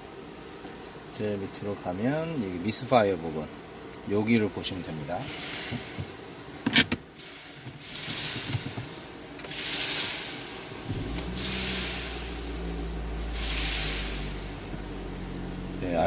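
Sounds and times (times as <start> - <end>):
soft hiss: 10.1 - 16.0
car engine idling: 10.6 - 16.0.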